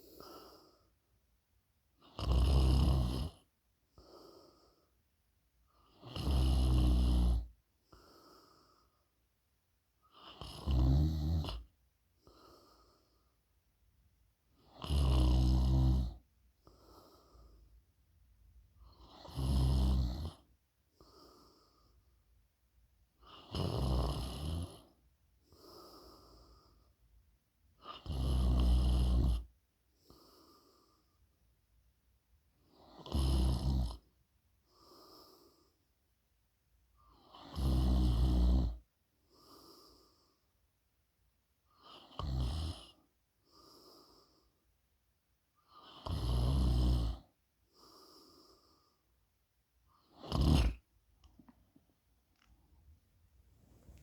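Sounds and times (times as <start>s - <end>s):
faint breath: 0.0s - 1.0s, 3.9s - 5.0s, 7.9s - 9.2s, 16.6s - 17.8s, 25.5s - 27.0s, 47.7s - 49.2s
person snoring: 2.0s - 3.4s, 6.0s - 7.5s, 14.7s - 16.2s, 19.0s - 20.4s, 23.4s - 24.8s, 50.2s - 50.8s.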